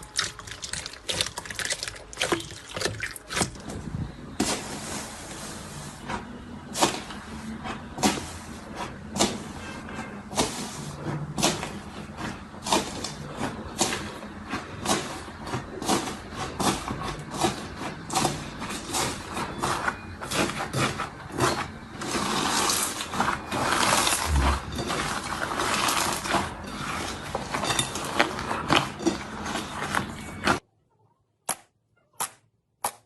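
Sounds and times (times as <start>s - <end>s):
crackly slime squishing: 0.0s - 3.7s.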